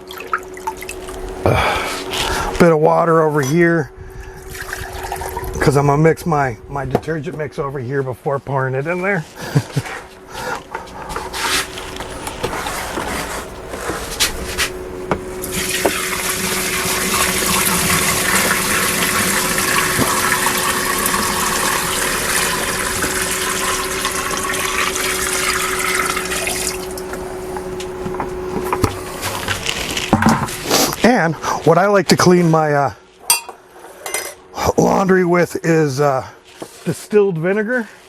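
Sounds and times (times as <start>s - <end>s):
water filling a container: 0.0s - 2.6s, 4.3s - 5.8s, 11.1s - 28.0s
faint steady hum: 0.0s - 38.0s.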